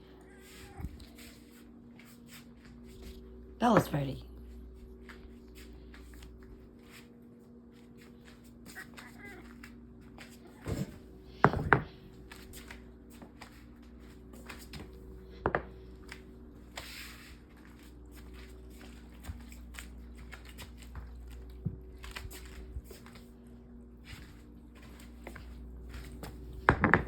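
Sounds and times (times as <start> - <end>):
steady low hum: 0.0 - 27.0
cats crunching food: 4.4 - 14.4, 15.0 - 26.6.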